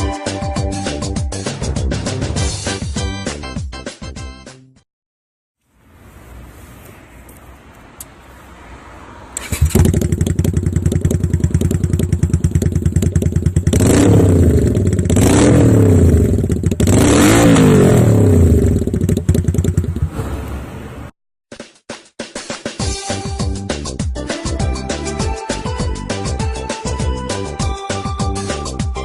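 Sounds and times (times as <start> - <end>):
motorcycle engine starting and revving: 9.3 - 20.9.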